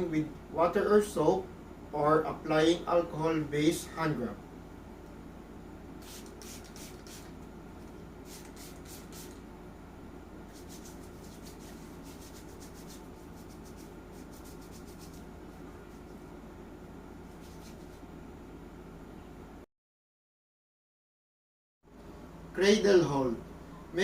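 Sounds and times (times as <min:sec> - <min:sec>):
low room hum: 0:00.0 - 0:19.7, 0:21.9 - 0:24.0
hands rubbing together: 0:06.0 - 0:07.4, 0:08.2 - 0:09.4, 0:10.5 - 0:15.3, 0:17.3 - 0:18.1.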